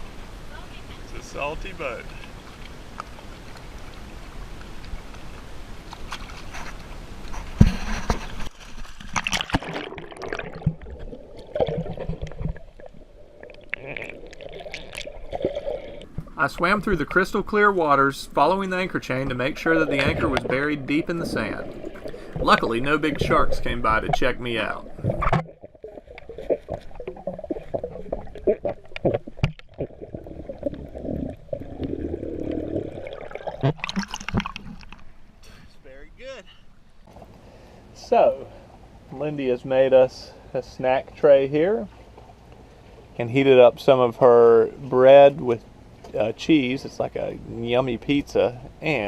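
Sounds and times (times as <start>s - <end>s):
small splashes and clicks: 2.1s - 16.3s, 33.5s - 35.1s
muffled underwater bubbling: 9.5s - 35.0s.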